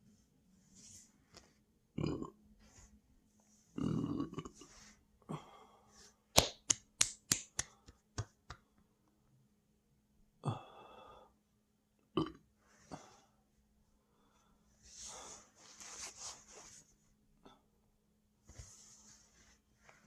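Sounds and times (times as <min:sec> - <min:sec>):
person belching: 0:02.0 - 0:02.4, 0:03.8 - 0:04.6, 0:12.1 - 0:12.4.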